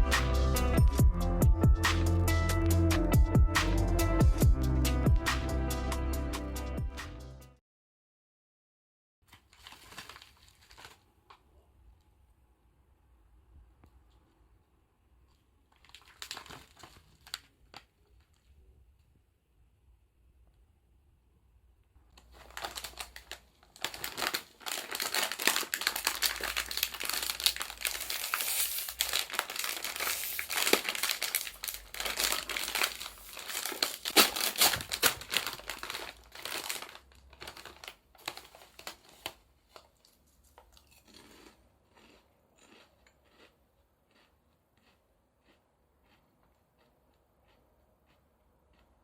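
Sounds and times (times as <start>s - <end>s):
packaging crinkling: 9.3s - 11.4s, 15.7s - 18.5s, 22.1s - 41.0s.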